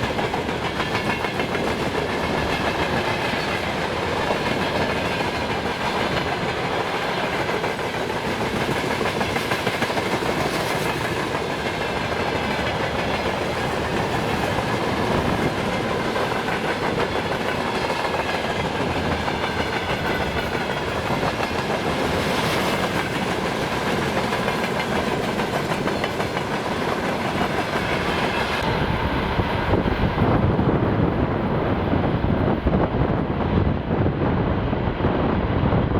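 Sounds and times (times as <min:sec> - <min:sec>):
train wheels clattering on rails: 0:00.0 - 0:33.6
wind rumble on microphone: 0:27.6 - 0:35.9.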